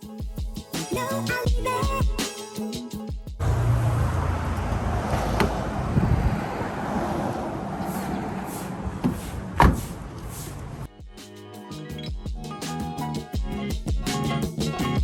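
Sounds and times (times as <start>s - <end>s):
car engine rumble: 3.4s - 10.9s.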